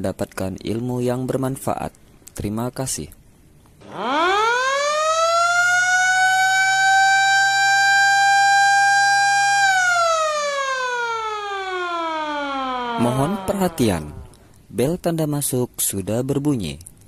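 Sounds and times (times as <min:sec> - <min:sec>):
siren school bell: 0:03.8 - 0:14.2.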